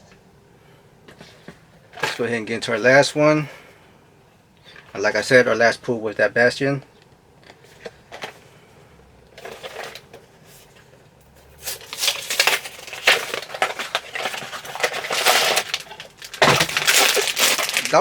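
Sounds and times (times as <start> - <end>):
toy packaging crackling and rustling: 7.4 - 8.7, 9.3 - 18.0
packaging handling ticks: 11.6 - 18.0.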